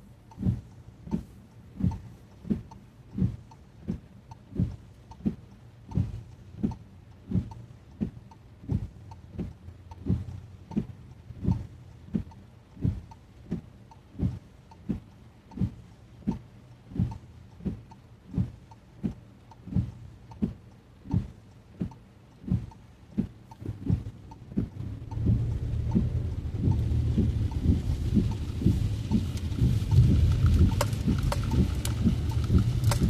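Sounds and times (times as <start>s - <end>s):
road noise: 0.0s - 33.0s
windshield wipers thumping: 0.0s - 33.0s
rain: 23.6s - 33.0s.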